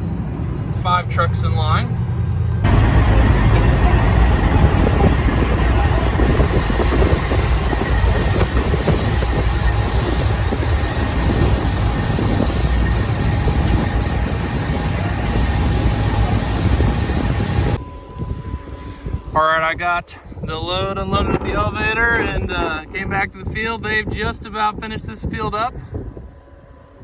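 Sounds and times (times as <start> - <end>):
grain and machinery rumbling: 0.1 - 19.6
faint steady whine: 2.5 - 22.0.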